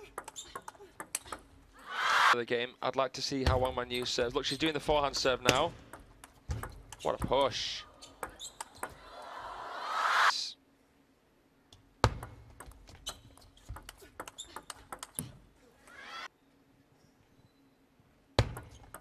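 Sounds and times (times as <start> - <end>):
table tennis ball clicks: 0.2 - 1.5, 8.2 - 9.0, 12.1 - 15.4.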